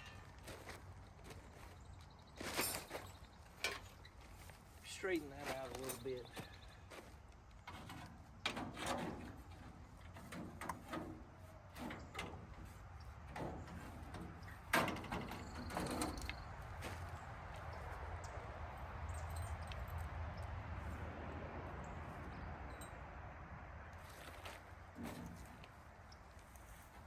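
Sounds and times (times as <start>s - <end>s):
knocks and clatter of metal: 7.6s - 16.5s, 25.0s - 25.8s.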